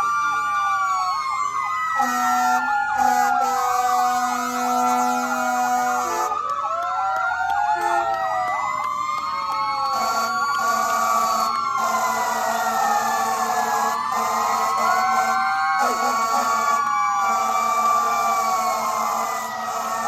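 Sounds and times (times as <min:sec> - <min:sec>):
emergency vehicle sirens wailing: 0:00.0 - 0:20.0
horn blast: 0:02.0 - 0:06.3, 0:07.8 - 0:08.2.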